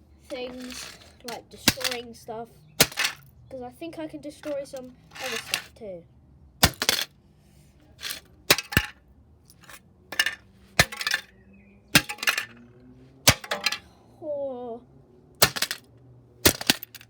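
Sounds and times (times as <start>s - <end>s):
broken pieces clinking and rattling: 0.3s - 2.0s, 2.8s - 3.3s, 4.8s - 5.7s, 6.6s - 7.1s, 8.0s - 11.4s, 12.0s - 12.7s, 13.3s - 13.9s, 15.4s - 15.8s, 16.4s - 17.0s.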